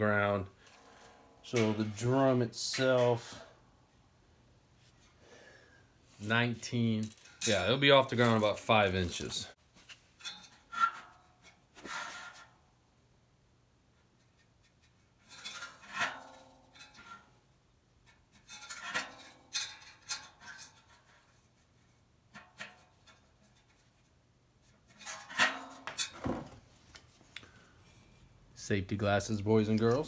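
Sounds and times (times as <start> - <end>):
metal scraping and clinking: 0.6 - 3.6, 6.1 - 11.0, 24.9 - 27.1, 29.6 - 30.0.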